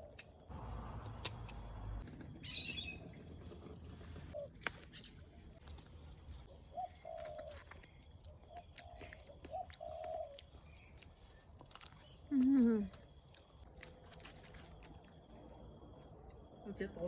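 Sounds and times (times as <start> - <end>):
high chirping bird calls: 2.4 - 3.2.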